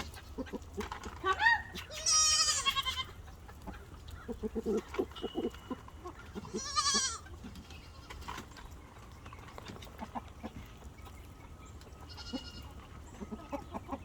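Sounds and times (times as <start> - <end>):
farm animal low calls: 0.0 - 8.2.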